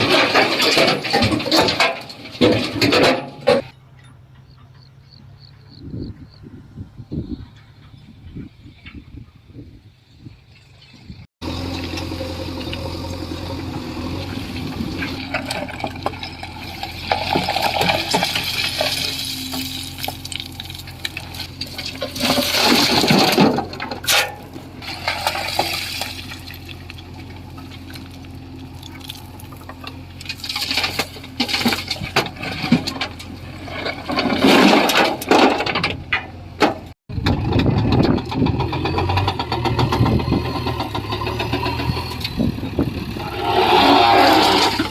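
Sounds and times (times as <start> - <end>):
stones clattering into trailer: 0.0 - 3.7, 14.6 - 40.3
diesel engine running: 10.4 - 44.9.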